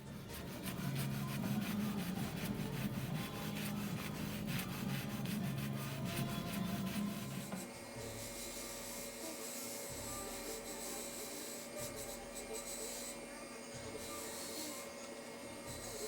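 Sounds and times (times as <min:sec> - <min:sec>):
buffing wheel rubbing on metal: 0:00.0 - 0:07.6.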